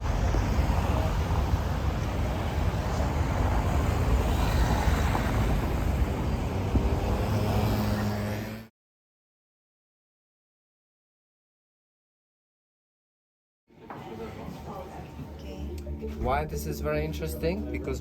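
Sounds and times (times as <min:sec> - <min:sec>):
low rumbling background noise: 0:00.0 - 0:08.4.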